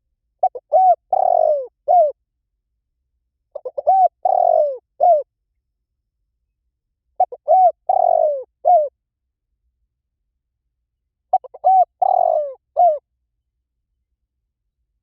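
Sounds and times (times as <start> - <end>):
dove cooing: 0.4 - 2.2, 3.6 - 5.3, 7.2 - 8.9, 11.3 - 13.0.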